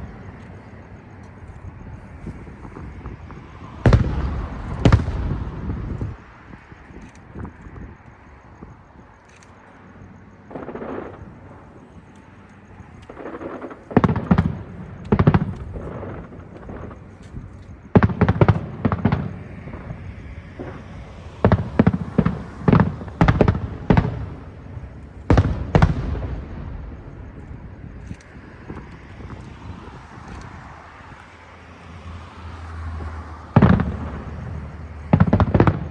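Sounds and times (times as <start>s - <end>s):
crackling firework tail: 0.0s - 8.8s, 10.4s - 31.2s, 33.0s - 35.9s
firework shells bursting: 2.3s - 7.7s, 10.5s - 19.7s, 21.5s - 31.4s.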